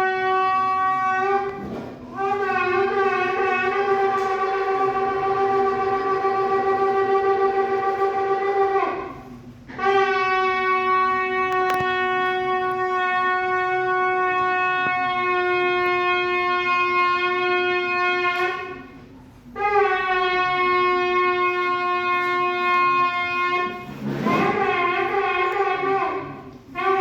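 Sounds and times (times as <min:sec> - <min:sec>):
shofar blasts: 0:00.0 - 0:27.0.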